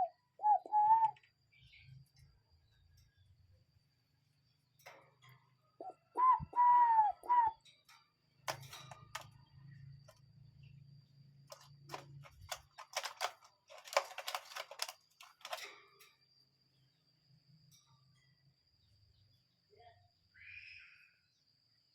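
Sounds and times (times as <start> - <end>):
bird whistled call: 0.0 - 1.2, 5.8 - 7.6
sharp clicks and crackles: 8.5 - 9.4, 11.5 - 15.8.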